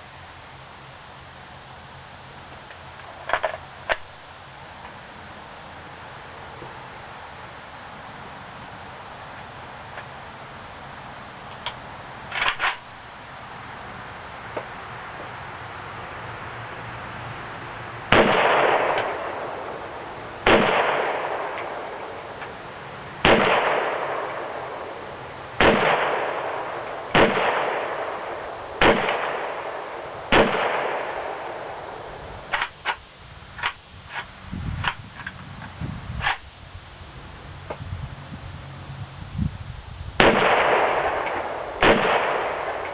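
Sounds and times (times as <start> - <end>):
rifle shots echoing: 18.1 - 22.3, 23.2 - 33.0, 40.2 - 42.9.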